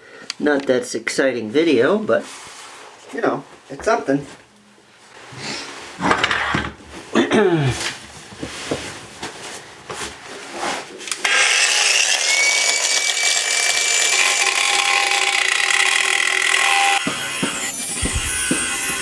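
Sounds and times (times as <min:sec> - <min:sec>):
power saw cutting pipe: 0:11.1 - 0:19.0.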